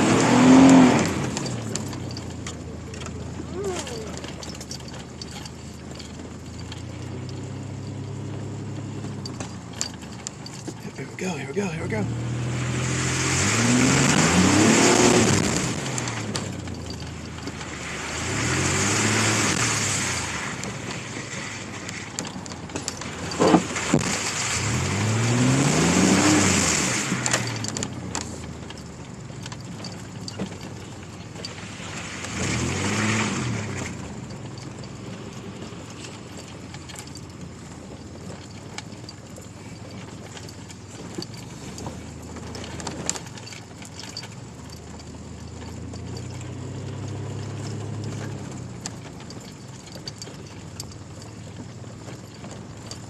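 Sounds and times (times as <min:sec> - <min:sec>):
engine revving hard: 0:00.0 - 0:01.5, 0:11.6 - 0:16.4, 0:17.6 - 0:20.6, 0:23.4 - 0:27.7, 0:32.1 - 0:34.0.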